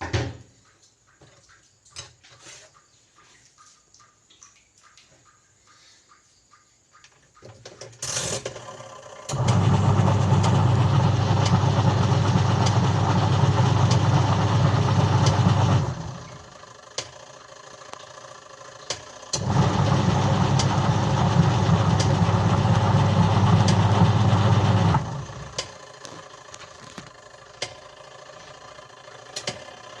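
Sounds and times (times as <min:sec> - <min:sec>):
washing machine agitating: 0:08.5 - 0:16.6, 0:18.9 - 0:26.0.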